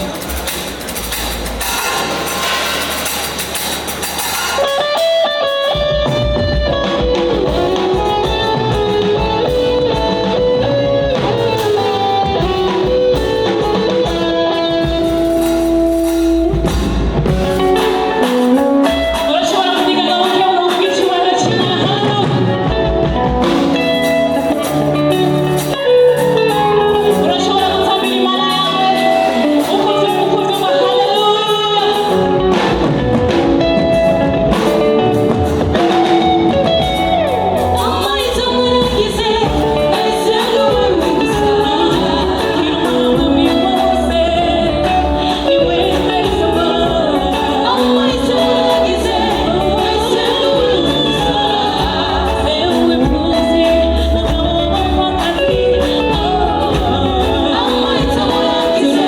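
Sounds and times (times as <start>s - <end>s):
guitar: 0.0s - 59.0s
percussion: 0.0s - 59.0s
woman singing: 17.6s - 59.0s
bass line: 40.7s - 58.7s.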